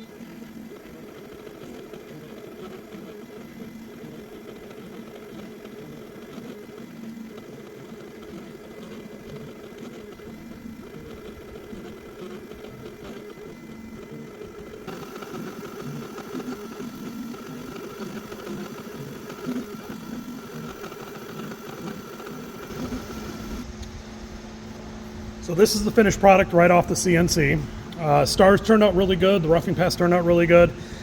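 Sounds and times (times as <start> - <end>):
router machine hum: 0.0 - 31.0.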